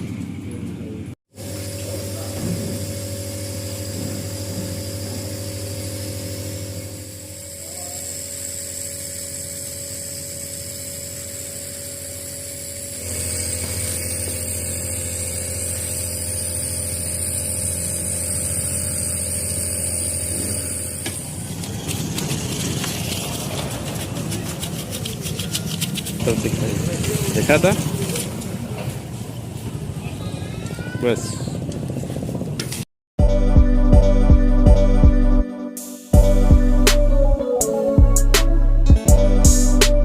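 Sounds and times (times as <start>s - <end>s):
mechanical hum with low drone: 0.0s - 30.6s.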